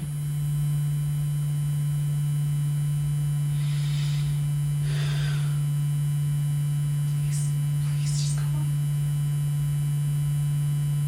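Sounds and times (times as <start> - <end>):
steady low hum: 0.0 - 11.0
faint breathy hisses: 3.5 - 5.7.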